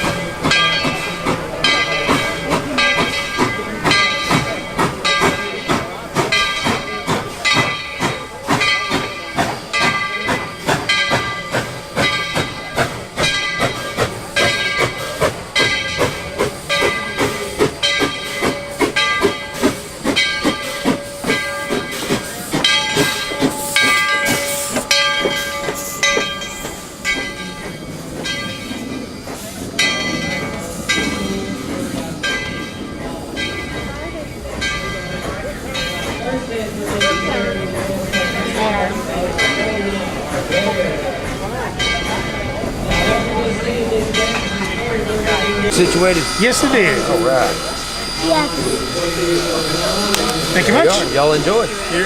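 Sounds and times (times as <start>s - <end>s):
steam locomotive chuffing: 0.0s - 52.0s
hiss of steam: 4.2s - 27.0s, 45.7s - 52.0s.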